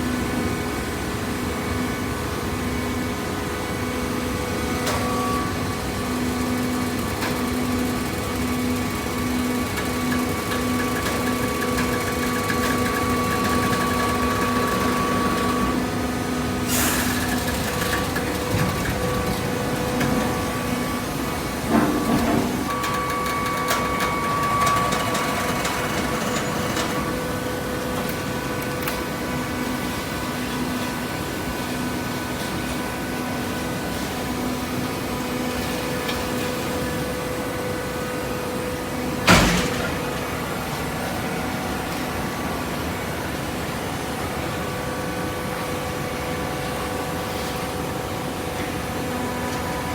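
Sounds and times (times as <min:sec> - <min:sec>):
machine clanks: 0:21.6 - 0:27.2, 0:39.2 - 0:40.7.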